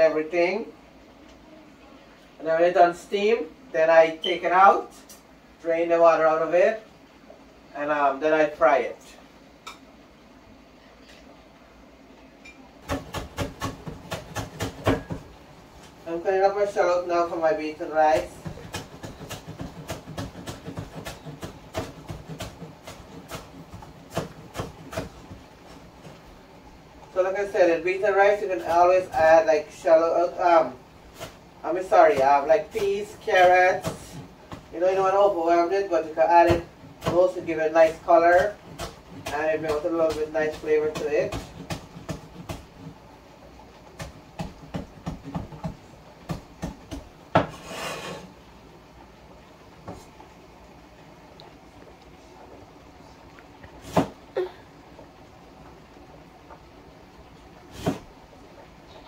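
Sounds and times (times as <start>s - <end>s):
knife chopping on cutting board: 12.8s - 15.3s, 18.2s - 25.4s, 38.2s - 42.9s, 44.0s - 48.2s
knife slicing on a cutting board: 47.4s - 48.3s.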